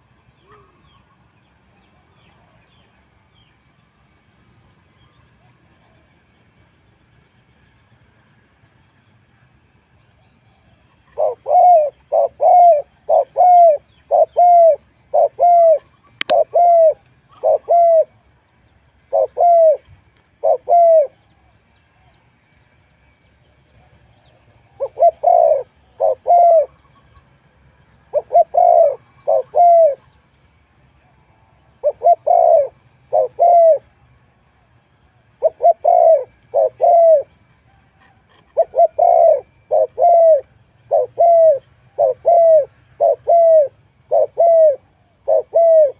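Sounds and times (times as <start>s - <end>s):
dove cooing: 0.0s - 1.0s, 10.7s - 18.2s, 19.1s - 22.1s, 23.8s - 27.3s, 28.1s - 30.2s, 31.0s - 34.0s, 35.2s - 45.9s.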